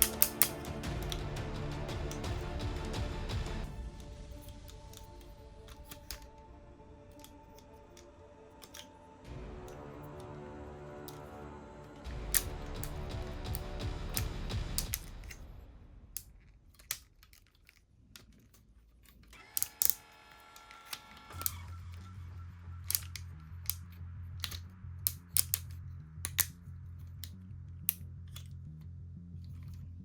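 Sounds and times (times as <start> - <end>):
plastic toy parts clicking and snapping: 0.0 - 2.5, 3.9 - 9.0, 11.0 - 11.3, 11.9 - 15.5, 16.1 - 22.1, 22.8 - 28.6
background music with low bass: 0.0 - 16.3, 21.3 - 30.0.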